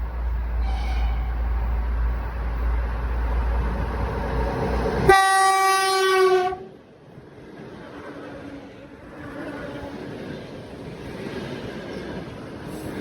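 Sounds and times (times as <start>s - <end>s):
train running rumble: 0.0s - 13.0s
train horn blast: 0.6s - 1.5s, 5.0s - 6.7s.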